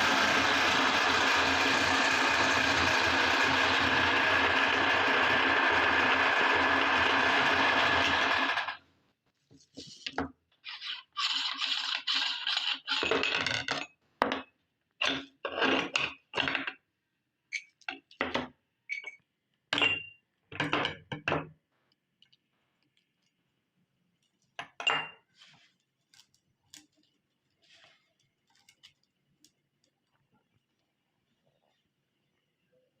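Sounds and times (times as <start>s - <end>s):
meat grinder motor running: 0.0s - 8.8s.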